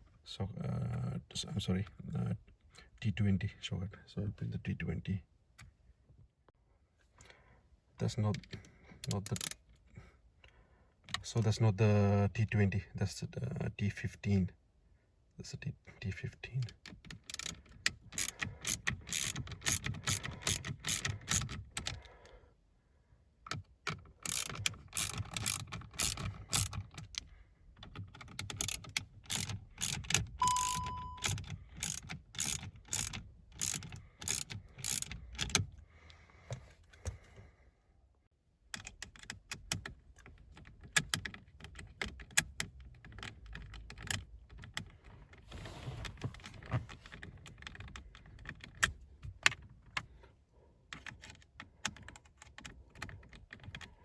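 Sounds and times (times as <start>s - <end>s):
ratchet clicking: 17.3s - 21.5s, 24.2s - 26.8s, 28.6s - 35.6s
short beep: 30.4s - 31.3s.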